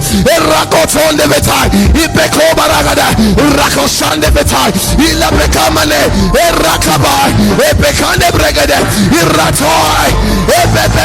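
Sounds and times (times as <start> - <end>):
instrumental worship music: 0.0 - 11.0
person shouting prayers: 5.2 - 11.0.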